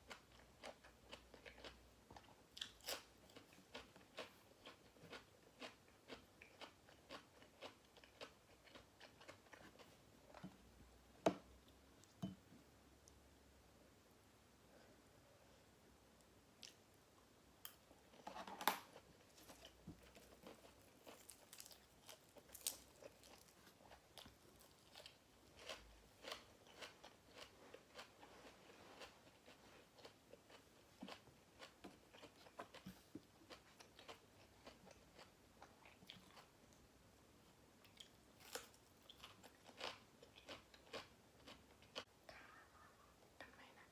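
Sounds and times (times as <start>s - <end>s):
person biting and chewing food: 19.3s - 35.3s.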